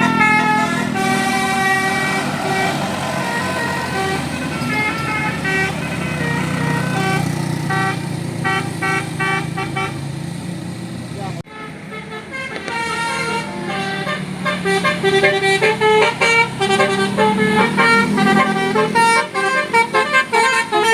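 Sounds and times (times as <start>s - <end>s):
bus horn playing melody: 0.0s - 10.2s, 11.4s - 20.9s
bus engine running: 0.0s - 20.9s.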